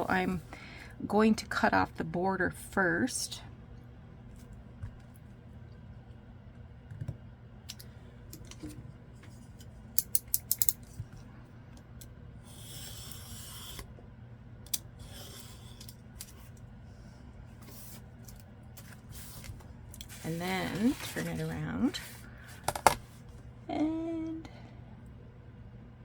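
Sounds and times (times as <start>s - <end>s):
blade swishing along paper: 12.5s - 13.9s, 15.0s - 16.6s, 18.8s - 22.3s.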